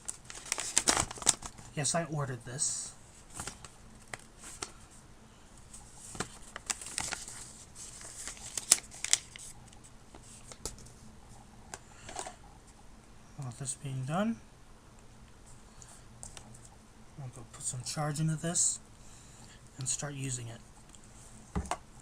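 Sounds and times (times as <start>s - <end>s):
packaging clicks and rustles: 0.0s - 1.7s, 3.3s - 4.8s, 6.0s - 9.6s.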